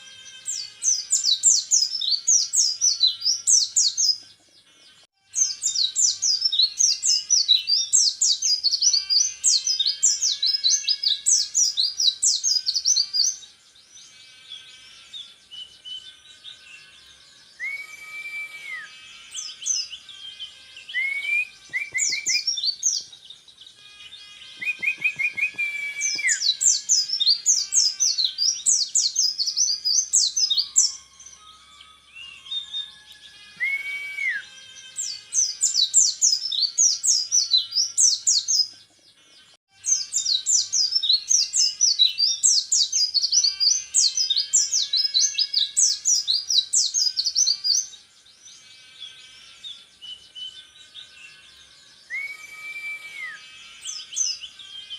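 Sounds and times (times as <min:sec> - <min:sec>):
held flat whistles: 0:17.6 - 0:19.2, 0:20.9 - 0:22.5, 0:24.5 - 0:26.6, 0:33.4 - 0:34.6, 0:52.1 - 0:53.6.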